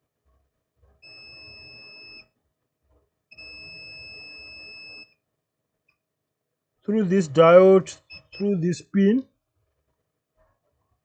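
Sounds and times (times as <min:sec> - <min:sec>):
multimeter continuity beep: 0:01.0 - 0:02.2, 0:03.4 - 0:05.1, 0:07.4 - 0:08.6.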